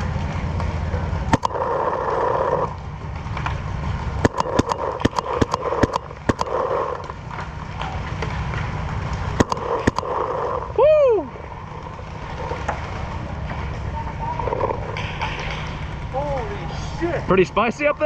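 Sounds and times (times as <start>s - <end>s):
paintball markers firing: 4.2s - 7.0s, 9.4s - 10.4s.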